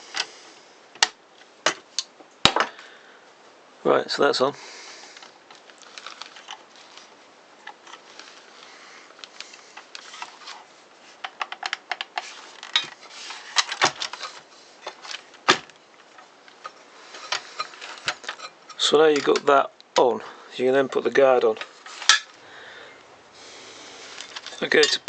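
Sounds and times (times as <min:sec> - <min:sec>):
metal parts and tools clinking: 0:05.8 - 0:08.6, 0:11.2 - 0:19.5, 0:24.1 - 0:25.0.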